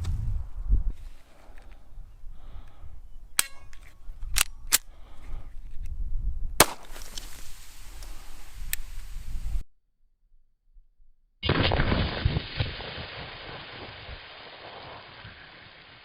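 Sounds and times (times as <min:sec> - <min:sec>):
low wind rumble: 0:00.0 - 0:09.6
pistol shots: 0:06.6 - 0:07.0.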